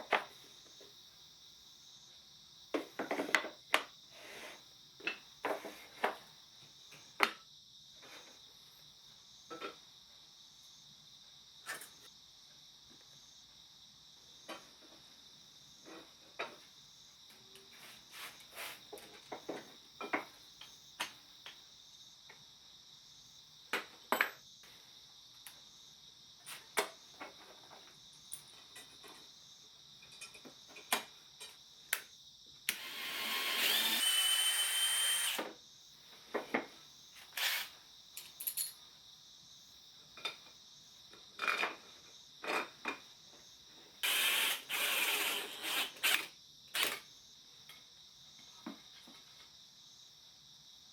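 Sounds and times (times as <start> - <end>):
power drill running: 32.7 - 35.5, 37.4 - 37.7, 44.0 - 47.0.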